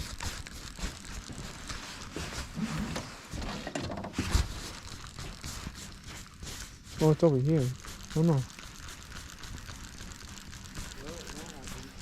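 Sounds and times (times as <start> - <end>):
rustling handling noise: 0.0 - 12.0
footsteps: 0.2 - 7.2.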